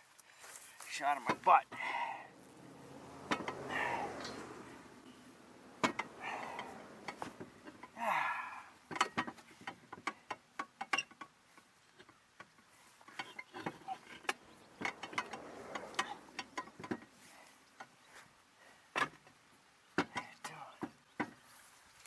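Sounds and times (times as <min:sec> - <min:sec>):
hand tools clicking and knocking: 0:01.2 - 0:18.0
scraping rustle: 0:12.6 - 0:18.3.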